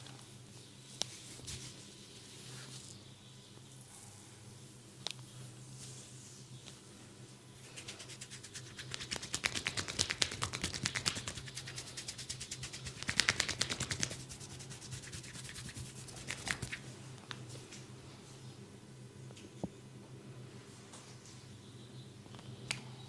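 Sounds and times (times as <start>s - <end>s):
hands rubbing in massage strokes: 7.6s - 16.8s.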